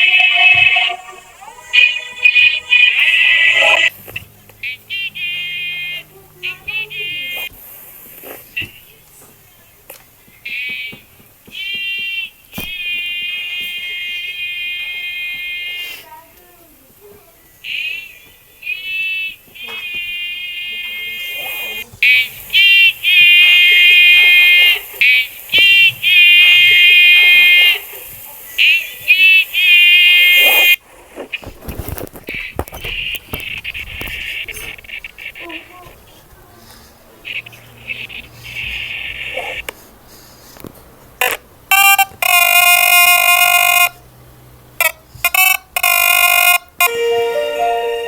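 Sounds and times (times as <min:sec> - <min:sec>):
high-pitched buzzy vocal calls: 0:00.0 - 0:03.9.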